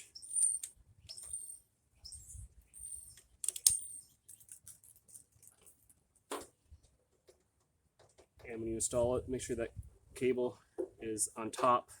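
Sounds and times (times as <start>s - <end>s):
cable parts clicking and scraping: 0.0s - 6.0s
sharp click: 3.1s - 3.8s.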